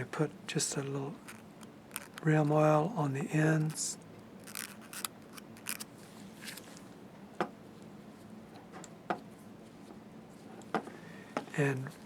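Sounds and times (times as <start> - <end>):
faint rustling of small parts: 1.2 - 2.3.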